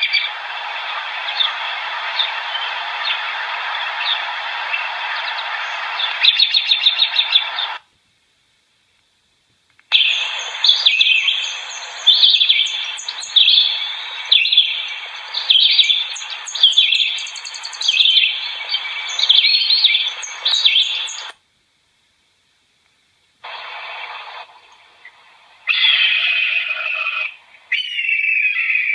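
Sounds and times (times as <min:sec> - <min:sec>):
steady background hiss: 0:00.0 - 0:28.9
songbirds chirping and singing: 0:09.9 - 0:21.4, 0:25.7 - 0:28.9.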